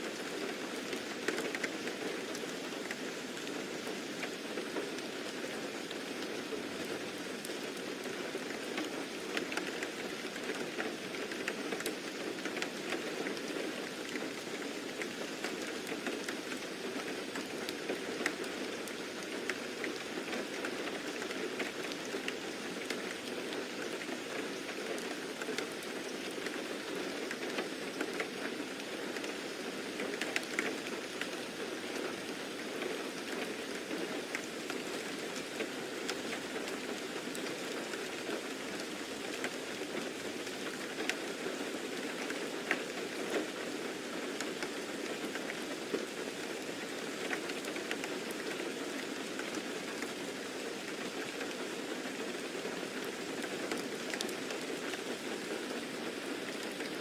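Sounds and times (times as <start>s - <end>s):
steady rain hiss: 0.0s - 57.0s
raindrop ticks: 0.9s - 4.4s, 14.1s - 32.2s, 32.8s - 43.6s, 44.4s - 50.2s, 52.6s - 57.0s.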